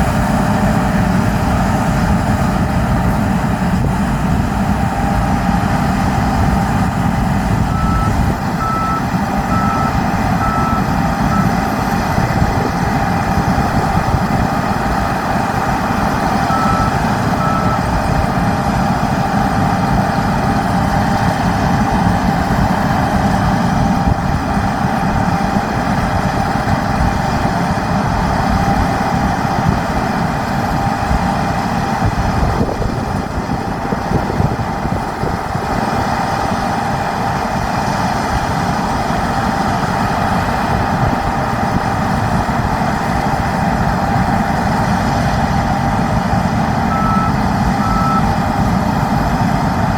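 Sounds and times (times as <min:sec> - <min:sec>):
farm machinery engine drone: 0:00.0 - 0:49.9
short warning beeps: 0:07.7 - 0:11.6, 0:16.5 - 0:17.9, 0:46.9 - 0:48.3.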